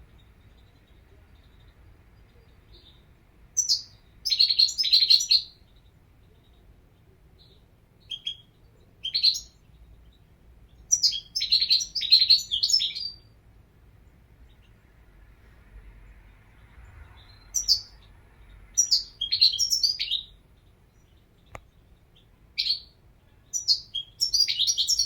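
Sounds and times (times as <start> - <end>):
bird twittering song: 0.0 - 13.4, 16.1 - 25.0
single bird chirps: 18.8 - 20.3, 21.0 - 25.0.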